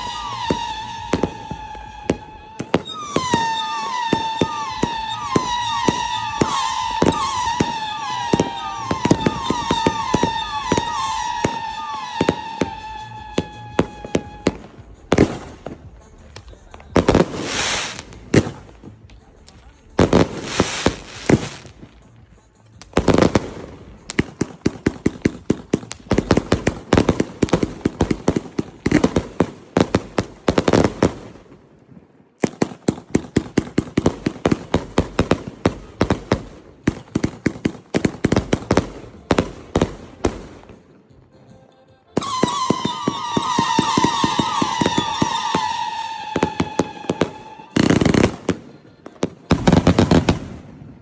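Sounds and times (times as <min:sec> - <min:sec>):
wavering howling whistle: 0:00.0 - 0:14.7
firework cake rapid shots: 0:00.0 - 0:22.2, 0:22.8 - 0:31.6, 0:32.4 - 0:40.8, 0:42.2 - 0:51.0
firework crackling: 0:00.0 - 0:41.2, 0:42.2 - 0:51.0.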